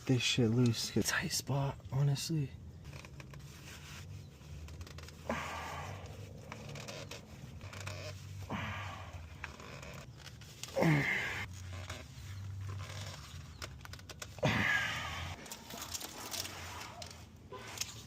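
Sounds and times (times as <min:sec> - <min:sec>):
man grunting with effort: 0:10.7 - 0:11.4.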